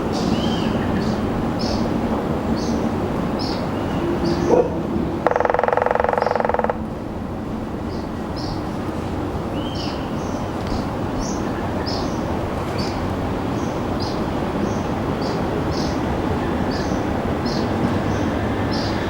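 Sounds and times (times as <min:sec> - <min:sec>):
helicopter flying overhead: 0:00.0 - 0:09.4
bird calling: 0:03.4 - 0:07.1.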